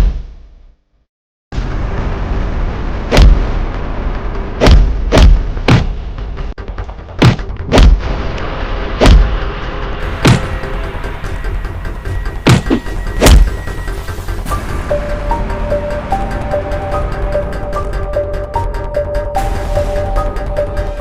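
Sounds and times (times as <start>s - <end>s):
loud sharp impact hits: 1.6s - 3.8s, 4.6s - 6.0s, 7.2s - 8.2s, 8.9s - 9.5s, 10.1s - 10.7s, 12.4s - 13.6s.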